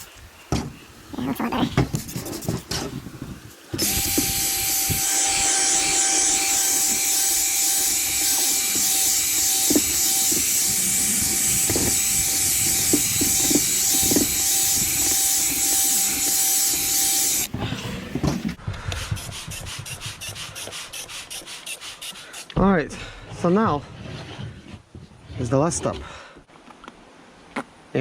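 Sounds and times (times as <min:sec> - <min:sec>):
pad rubbing on plastic lens: 0:00.0 - 0:03.0, 0:19.0 - 0:22.6
drill motor whine: 0:03.8 - 0:17.5.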